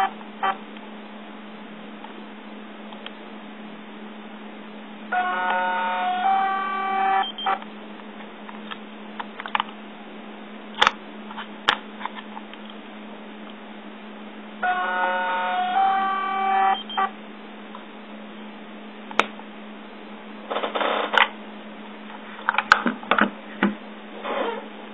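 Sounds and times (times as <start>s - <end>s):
steady low hum: 0.0s - 24.9s
short rattling burst: 20.5s - 21.3s.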